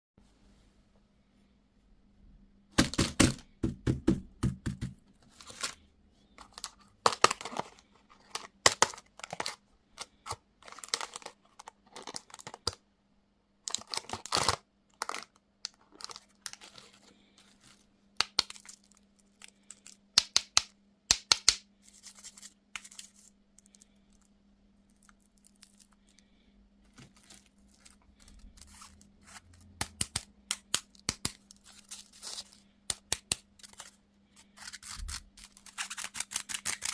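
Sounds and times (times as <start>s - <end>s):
candy wrapper crinkling: 6.4s - 12.8s, 13.7s - 20.6s, 21.8s - 36.9s.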